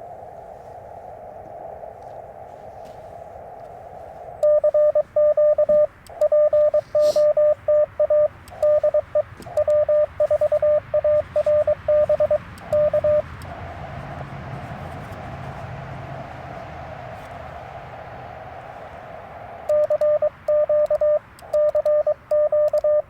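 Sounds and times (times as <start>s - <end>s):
radio band noise hiss: 0.0s - 20.5s
morse code beeping tone: 4.4s - 13.6s, 19.7s - 23.0s.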